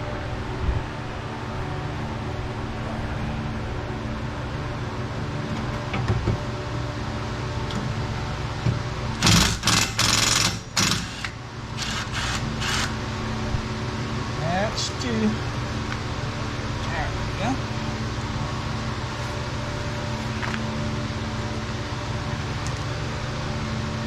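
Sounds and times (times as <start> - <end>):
impact wrench rattling bursts: 9.2 - 13.0.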